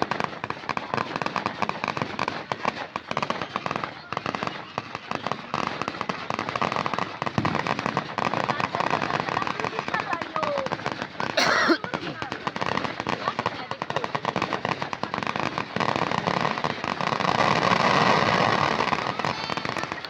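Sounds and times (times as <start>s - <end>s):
fireworks crackling and popping: 0.0s - 20.0s.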